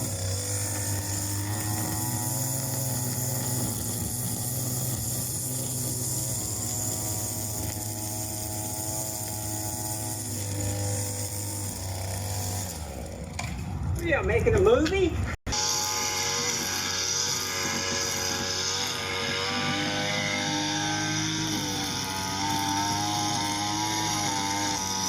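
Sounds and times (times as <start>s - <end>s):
grass cutter engine buzzing: 0.0s - 14.3s, 15.5s - 25.0s.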